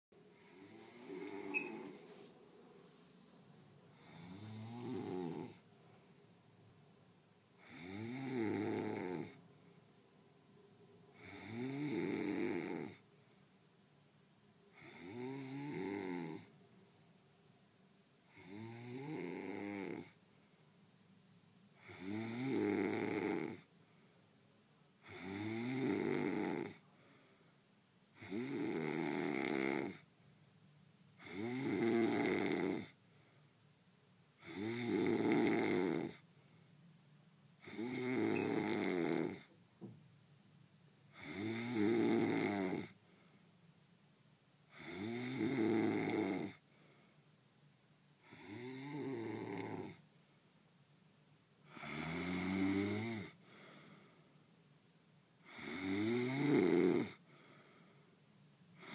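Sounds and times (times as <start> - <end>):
quiet breaths: 0.1 - 58.9
man snoring: 0.3 - 2.1, 4.0 - 5.6, 7.6 - 9.4, 11.2 - 13.0, 14.7 - 16.5, 18.3 - 20.2, 21.8 - 23.7, 25.0 - 26.8, 28.2 - 30.0, 31.2 - 33.0, 34.4 - 36.2, 37.6 - 39.5, 41.1 - 43.0, 44.7 - 46.6, 48.2 - 50.0, 51.7 - 53.8, 55.4 - 57.2.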